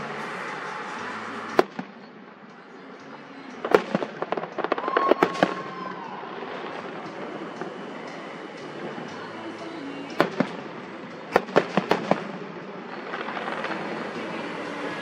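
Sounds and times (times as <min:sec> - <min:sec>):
cracking firework bangs: 0:01.5 - 0:02.1, 0:03.6 - 0:08.8, 0:10.1 - 0:15.0
firework whistle: 0:03.6 - 0:09.2.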